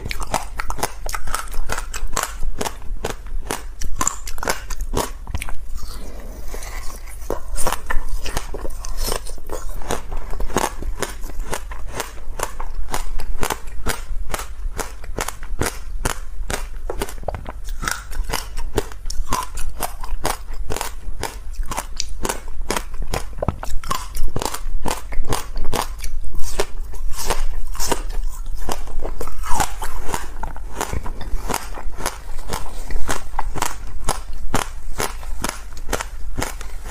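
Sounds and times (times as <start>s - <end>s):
ice being crunched and chewed: 0.0s - 36.9s.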